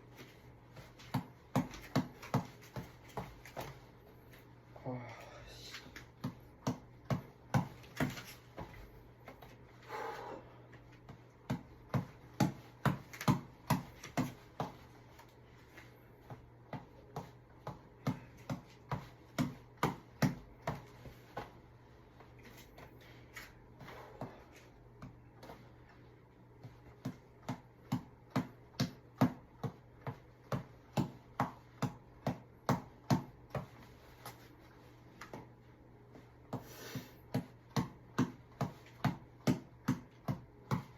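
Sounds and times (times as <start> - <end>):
tap ball being punched: 0.8 - 3.7, 6.0 - 8.8, 11.0 - 14.8, 16.2 - 21.5, 26.6 - 33.8, 37.3 - 40.9.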